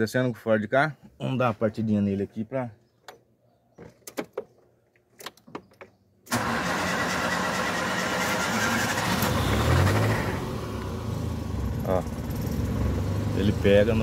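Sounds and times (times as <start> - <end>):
car engine starting and running: 6.3 - 14.0.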